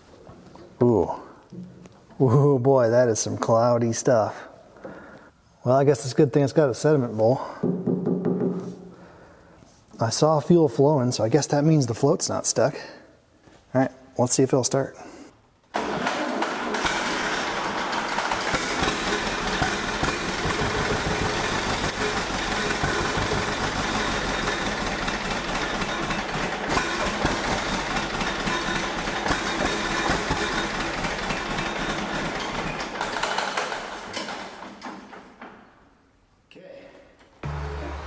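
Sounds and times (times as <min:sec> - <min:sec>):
tractor engine running: 0:15.8 - 0:34.0, 0:37.4 - 0:38.0.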